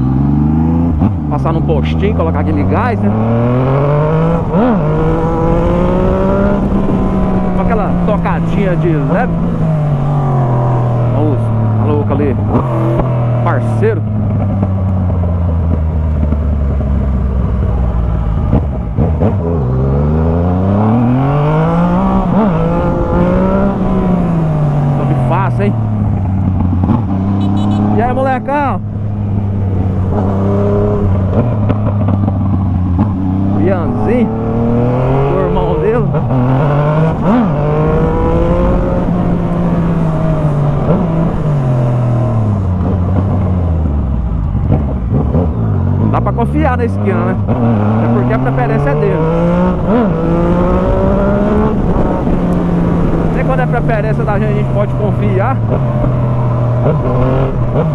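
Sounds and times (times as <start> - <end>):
motorcycle engine revving: 0.0 - 57.9.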